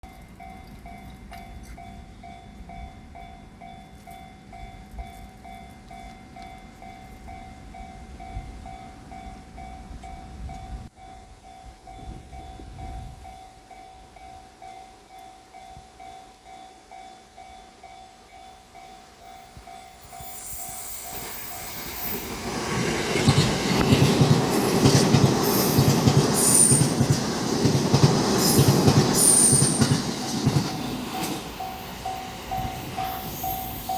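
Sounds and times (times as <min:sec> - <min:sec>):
train wheels knocking on track: 0:21.2 - 0:33.9.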